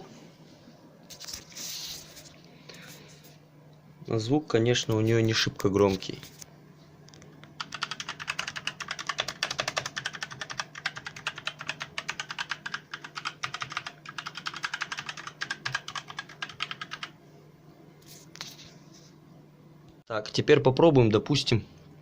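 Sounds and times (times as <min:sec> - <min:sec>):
fast mechanical keyboard typing: 0:07.6 - 0:17.2.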